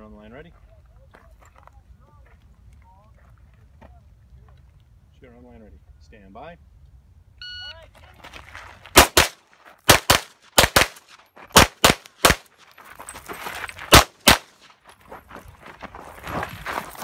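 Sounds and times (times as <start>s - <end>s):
pistol shots: 9.0s - 12.5s, 13.9s - 14.7s.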